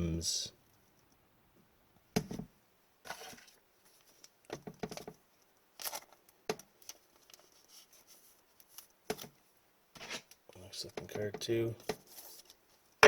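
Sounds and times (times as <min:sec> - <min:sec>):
cards rustling: 0:06.8 - 0:09.3, 0:11.8 - 0:12.6.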